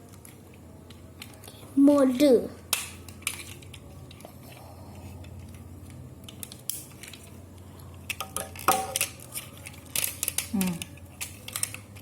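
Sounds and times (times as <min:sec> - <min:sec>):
plastic toy parts clicking: 0:02.7 - 0:04.5, 0:05.2 - 0:12.0.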